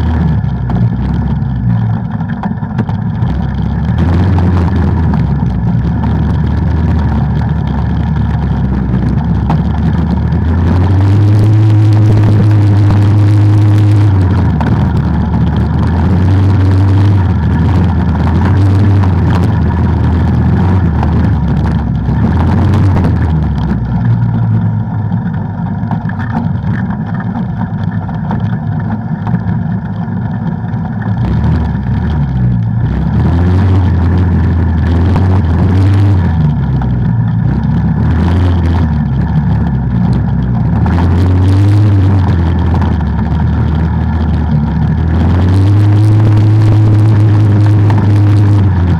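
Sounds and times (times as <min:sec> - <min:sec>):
atv engine revving: 0:00.0 - 0:48.9.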